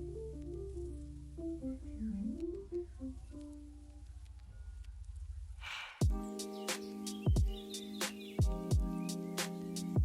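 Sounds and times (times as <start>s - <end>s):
steady low bass: 0.0s - 3.2s
plucked guitar-like melody: 0.0s - 3.6s.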